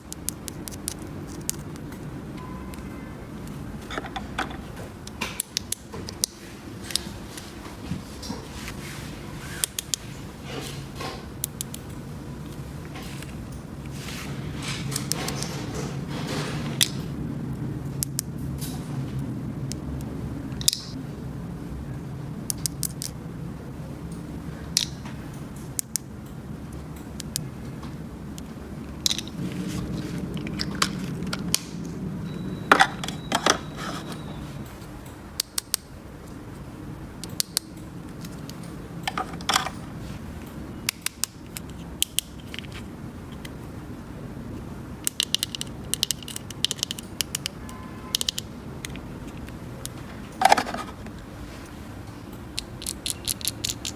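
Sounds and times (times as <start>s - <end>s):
plastic toy pieces clicking: 45.0s - 49.6s, 52.6s - 53.9s.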